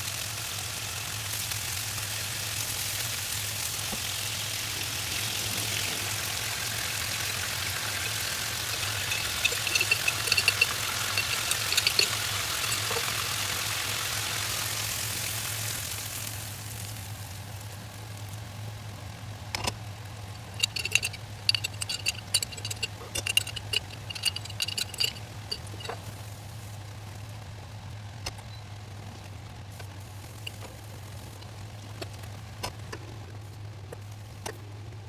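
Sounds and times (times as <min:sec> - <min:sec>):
food sizzling: 0:02.7 - 0:15.6
spoon scraping against pan: 0:06.8 - 0:13.8, 0:20.4 - 0:26.1.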